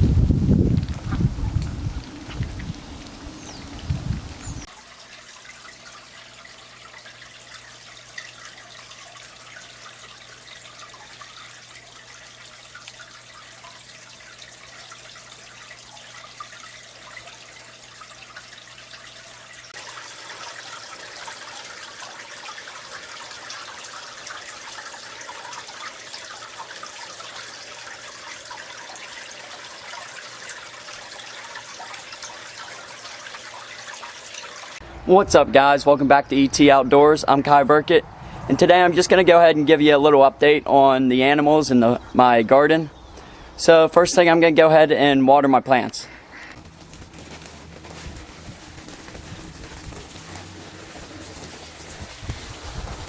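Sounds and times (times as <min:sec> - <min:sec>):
running water trickling: 0:00.0 - 0:34.9, 0:45.7 - 0:53.0.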